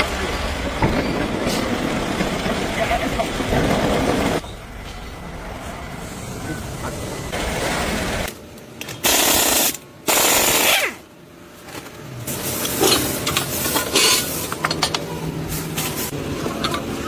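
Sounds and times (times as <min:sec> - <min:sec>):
compressed air tool bursts: 0:09.0 - 0:11.0.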